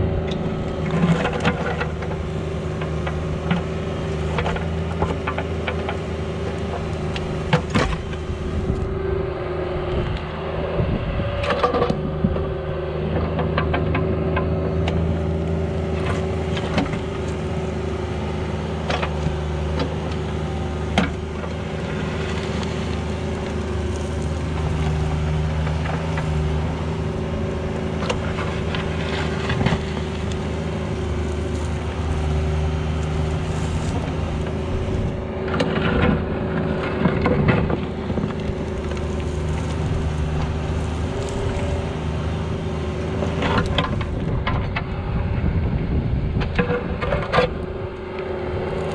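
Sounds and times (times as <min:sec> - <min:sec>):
excavator diesel engine running: 0:00.0 - 0:48.9
bucket clanking and scraping: 0:00.8 - 0:06.0, 0:06.8 - 0:08.8, 0:27.9 - 0:32.6.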